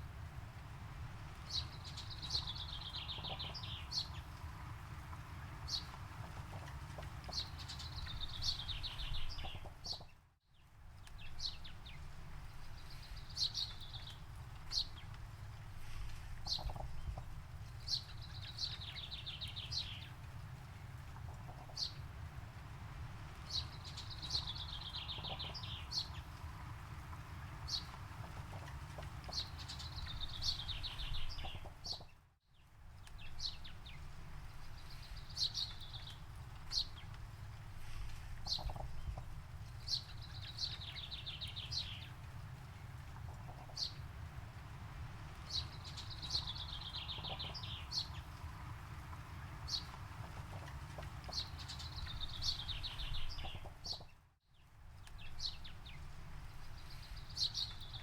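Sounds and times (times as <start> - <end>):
songbirds trilling: 1.3 - 10.1, 16.4 - 20.2, 23.2 - 32.2, 38.4 - 54.2.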